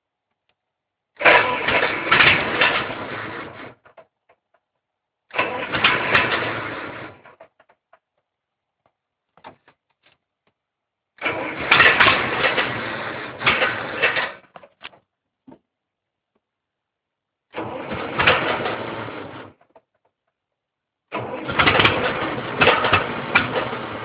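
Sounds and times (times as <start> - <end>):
engine cranking by starter: 1.2 - 4.0, 5.3 - 7.7, 11.2 - 14.6, 17.5 - 19.8, 21.1 - 24.0.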